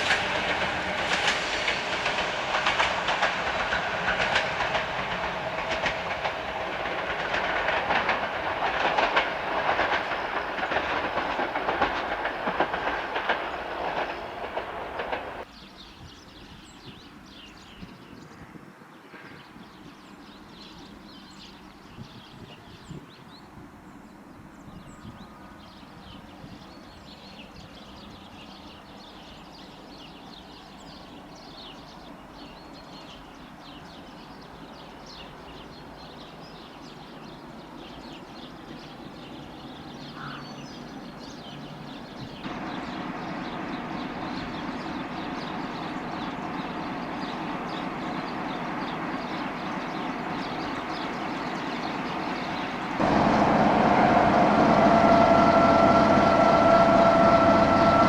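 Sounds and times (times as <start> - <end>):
approaching train: 0.0 - 18.0, 19.1 - 58.0
small birds chirping: 24.1 - 53.0.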